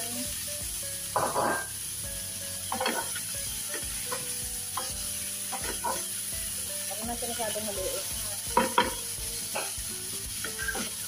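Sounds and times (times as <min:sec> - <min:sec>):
food sizzling in hot oil: 0:00.0 - 0:11.0
spatula scraping pan: 0:02.7 - 0:06.2, 0:10.4 - 0:11.0.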